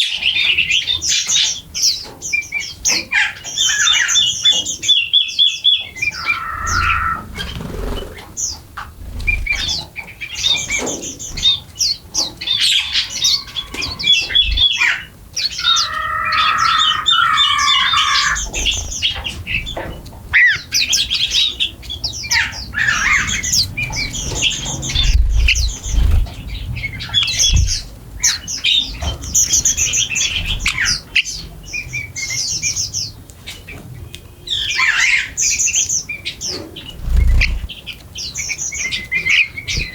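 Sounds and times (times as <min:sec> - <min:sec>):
small birds chirping: 0:00.0 - 0:39.9
harsh low bird calls: 0:02.7 - 0:32.4, 0:36.4 - 0:39.9
soft low thumps: 0:23.7 - 0:26.8, 0:27.4 - 0:27.9, 0:36.9 - 0:37.7.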